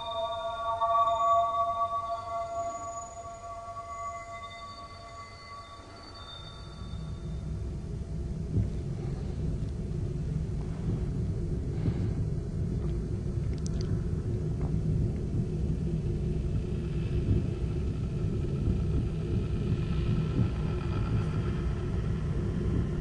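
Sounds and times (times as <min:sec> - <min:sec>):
faint high tones: 0:00.0 - 0:07.8
low rumbling noise: 0:00.0 - 0:23.0.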